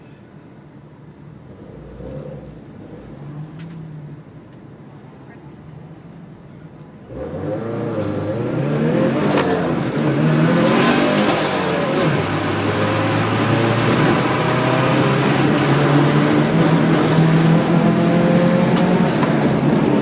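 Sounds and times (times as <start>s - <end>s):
race car engine under throttle: 7.0s - 20.0s.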